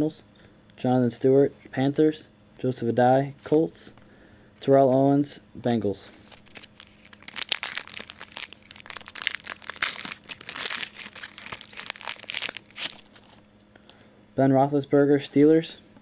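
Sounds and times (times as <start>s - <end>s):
plastic wrapper crinkling: 6.1s - 13.5s.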